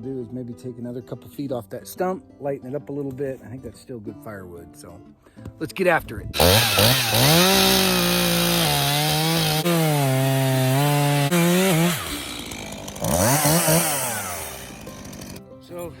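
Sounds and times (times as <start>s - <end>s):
chainsaw cutting wood: 6.4s - 15.4s.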